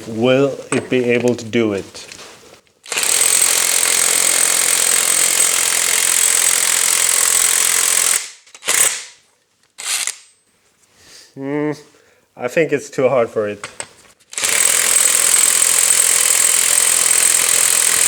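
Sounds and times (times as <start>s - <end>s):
impact wrench hammering: 14.4s - 18.0s.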